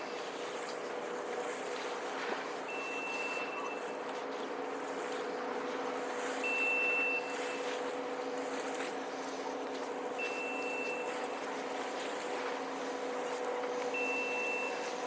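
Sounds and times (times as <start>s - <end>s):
low machine drone: 0.0s - 15.0s
high electronic beep: 2.7s - 3.8s, 6.5s - 7.3s, 10.2s - 11.2s, 14.0s - 14.8s.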